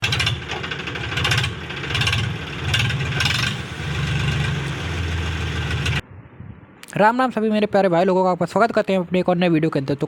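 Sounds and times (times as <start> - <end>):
tractor diesel engine open exhaust: 0.0 - 6.0.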